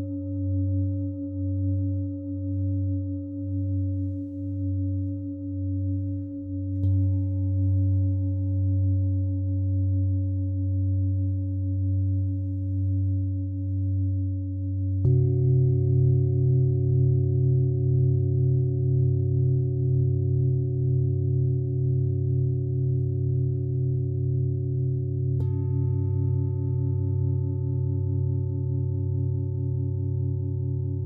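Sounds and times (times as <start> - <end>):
singing bowls ringing: 15.1 - 31.0.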